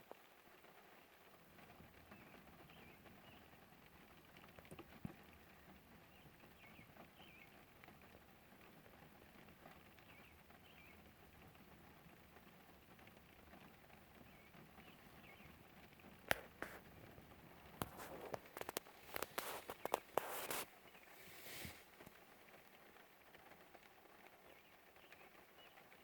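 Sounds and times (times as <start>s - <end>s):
light rain pattering: 0.0s - 26.0s
bird chirping: 2.1s - 3.6s, 5.5s - 7.6s, 9.9s - 11.1s, 14.1s - 16.6s, 17.6s - 21.4s, 24.4s - 26.0s.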